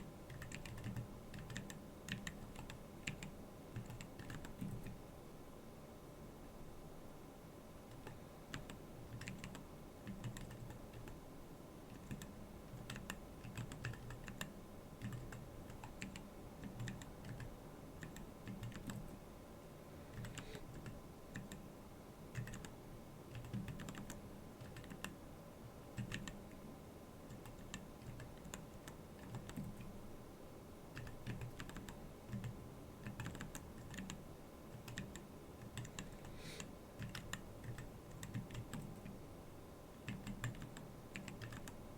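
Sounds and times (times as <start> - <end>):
mechanical keyboard typing: 0.3 - 5.0, 7.9 - 11.2, 11.9 - 19.2, 20.1 - 21.6, 22.3 - 22.7, 23.3 - 25.2, 26.0 - 26.4, 27.3 - 29.9, 30.9 - 36.3, 37.0 - 39.2, 40.0 - 41.8.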